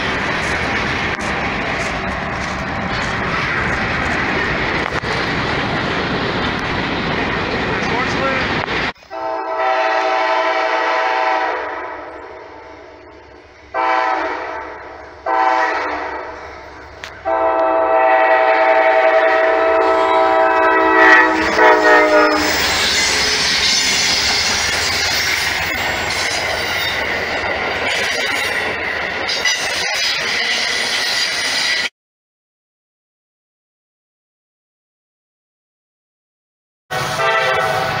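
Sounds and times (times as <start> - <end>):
wheels clacking over rail joints: 0.0 - 9.0, 22.4 - 31.5
train wheel and rail noise: 0.0 - 31.9, 36.9 - 38.0
locomotive air horn blasts: 9.1 - 12.6, 13.7 - 16.4, 17.2 - 23.4, 36.9 - 38.0.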